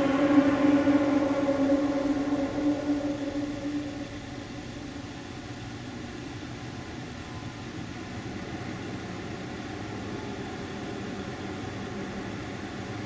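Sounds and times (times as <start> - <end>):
steady hiss: 0.0 - 5.5
faint steady tones: 0.0 - 6.0
low metallic drone: 0.0 - 6.0.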